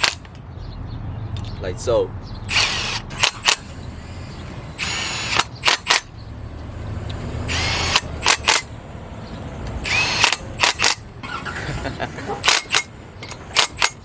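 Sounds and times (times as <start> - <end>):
power drill whining in bursts: 2.5 - 6.1, 7.5 - 8.7, 9.7 - 11.7, 12.4 - 14.0.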